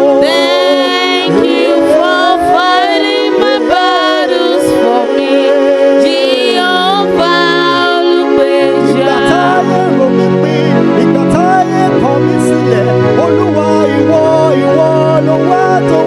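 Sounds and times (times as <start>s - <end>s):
held chords: 0.0s - 16.0s
person singing: 0.0s - 16.0s.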